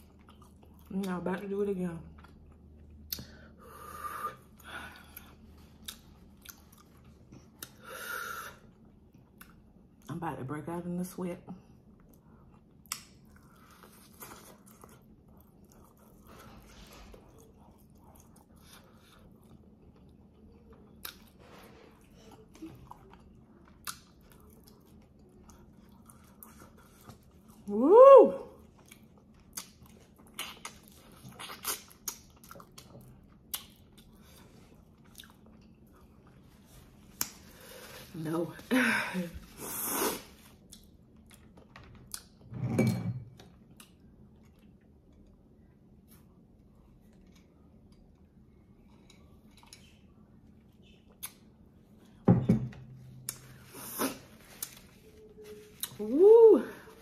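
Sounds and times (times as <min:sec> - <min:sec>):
faint chewing: 0:00.0 - 0:01.2, 0:04.5 - 0:07.8, 0:11.6 - 0:27.7, 0:28.6 - 0:38.1, 0:43.5 - 0:52.2.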